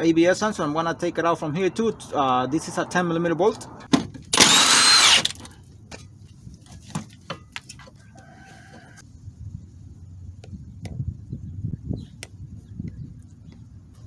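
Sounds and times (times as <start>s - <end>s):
power tool whine: 4.4s - 5.4s.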